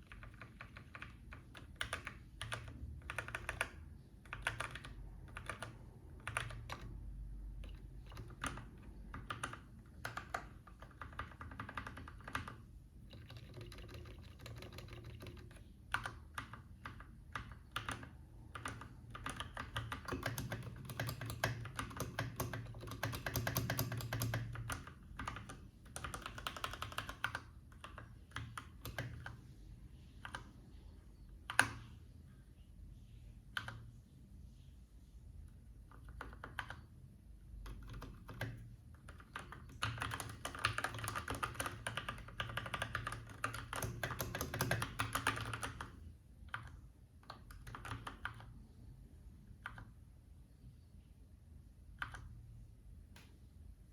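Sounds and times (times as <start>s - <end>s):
mechanical keyboard typing: 0.0s - 29.4s, 31.3s - 31.9s, 35.8s - 36.9s, 37.6s - 48.6s.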